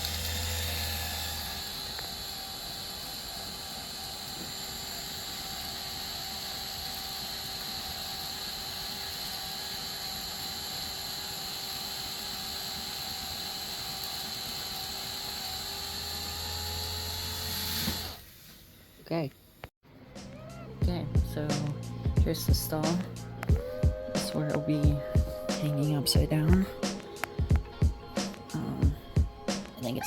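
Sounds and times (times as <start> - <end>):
cordless drill motor whining: 0.0 - 18.7.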